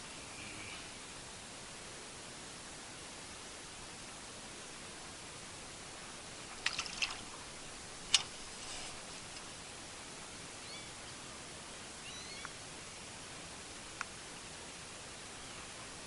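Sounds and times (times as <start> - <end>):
light rain hissing: 0.0 - 16.0
faint high chirps: 10.6 - 11.2, 12.0 - 12.6.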